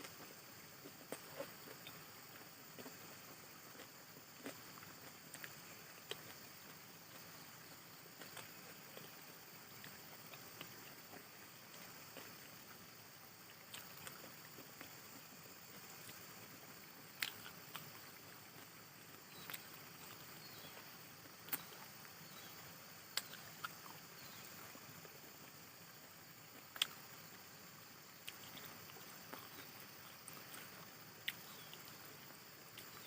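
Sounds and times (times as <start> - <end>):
faint steady hiss: 0.0 - 33.0
eating clicks and smacks: 13.7 - 16.2, 17.2 - 18.0, 19.3 - 21.9, 23.1 - 24.1, 26.6 - 27.1, 28.2 - 32.0.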